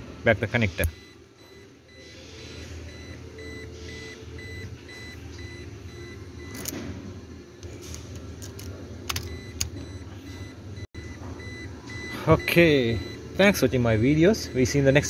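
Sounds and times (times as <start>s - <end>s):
car reminder buzzer beeping: 9.2s - 15.0s.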